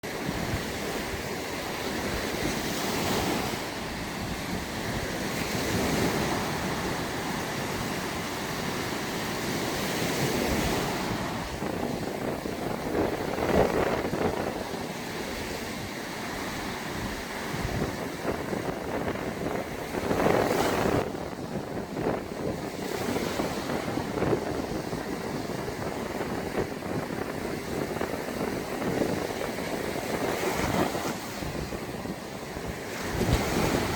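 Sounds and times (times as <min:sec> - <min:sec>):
waves breaking on sand: 0:00.0 - 0:33.9
wind buffeting microphone: 0:00.0 - 0:33.9.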